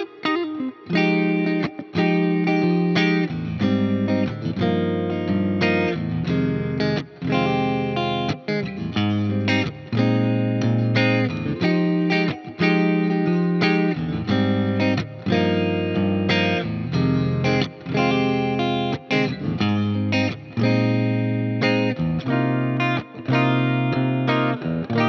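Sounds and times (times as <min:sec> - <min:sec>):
electric guitar playing chords: 0:00.0 - 0:25.0.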